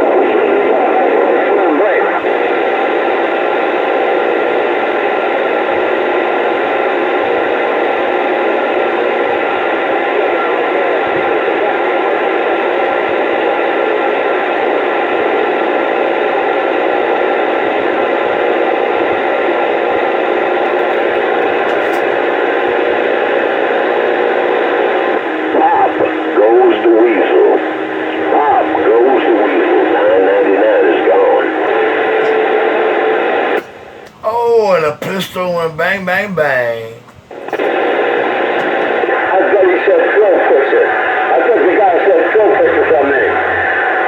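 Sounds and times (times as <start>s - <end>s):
radio static hiss: 34.7s - 42.6s.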